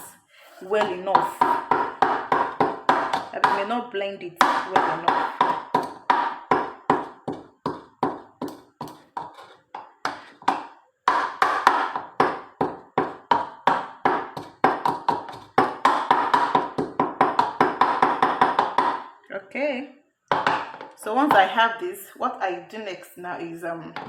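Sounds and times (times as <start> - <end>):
pestle pounding in a mortar: 0.7 - 3.8, 4.4 - 19.2, 20.3 - 21.5.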